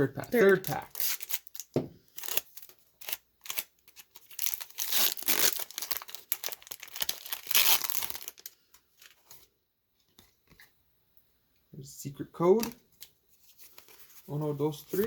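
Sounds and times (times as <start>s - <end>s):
foil wrapper crinkling and tearing: 0.3s - 9.4s.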